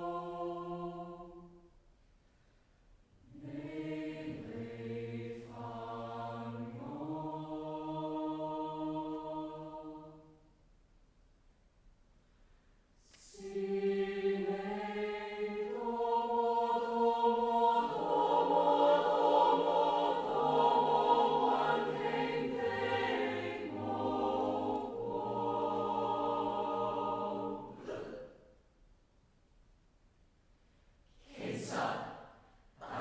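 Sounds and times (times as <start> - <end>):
choir singing held chords: 0.0 - 1.8, 3.2 - 10.5, 13.1 - 28.5, 31.3 - 33.0.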